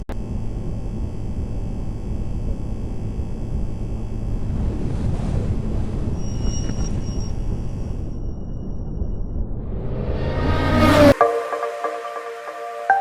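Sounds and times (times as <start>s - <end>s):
motorboat engine drone: 0.0s - 11.3s
wind buffeting microphone: 4.4s - 7.0s.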